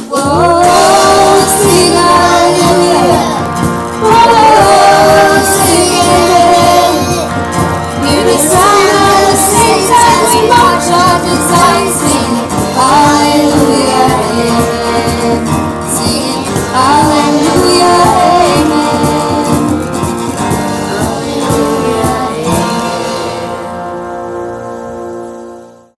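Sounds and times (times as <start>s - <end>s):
worship band with singing: 0.0s - 25.9s.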